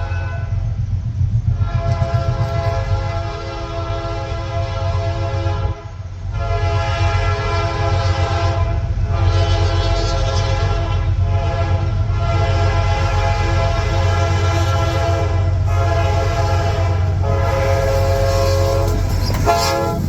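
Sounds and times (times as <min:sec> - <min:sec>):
locomotive horn blasts: 0:00.0 - 0:00.6, 0:01.5 - 0:20.0
diesel engine rumble: 0:00.0 - 0:06.5, 0:12.0 - 0:20.0.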